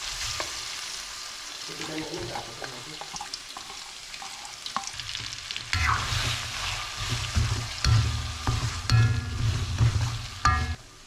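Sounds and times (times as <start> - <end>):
food sizzling in a pan: 0.0 - 11.0
metal utensil scraping: 3.1 - 10.8.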